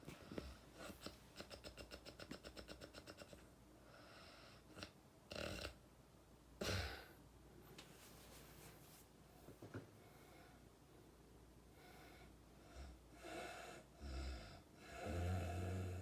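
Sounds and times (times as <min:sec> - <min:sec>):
person snoring: 0:13.2 - 0:16.0.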